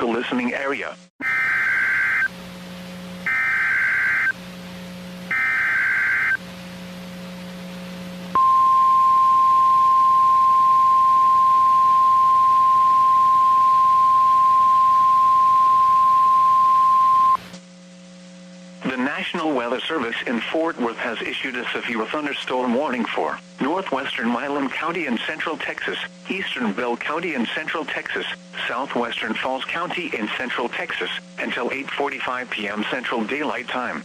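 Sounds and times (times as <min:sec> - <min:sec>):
steady alarm tone: 0:01.2 - 0:02.4, 0:03.2 - 0:04.4, 0:05.3 - 0:06.4, 0:08.4 - 0:17.4
warbling digital data tones: 0:03.3 - 0:04.4, 0:05.3 - 0:06.4.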